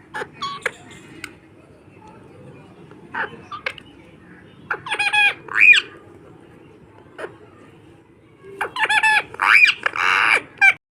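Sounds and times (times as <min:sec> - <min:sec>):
parrot calling: 0:00.1 - 0:00.8, 0:04.7 - 0:06.0, 0:08.6 - 0:10.8.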